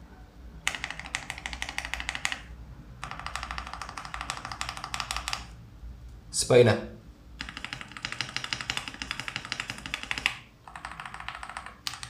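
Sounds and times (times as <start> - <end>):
mechanical keyboard clacking: 0.7 - 5.5, 7.4 - 12.0.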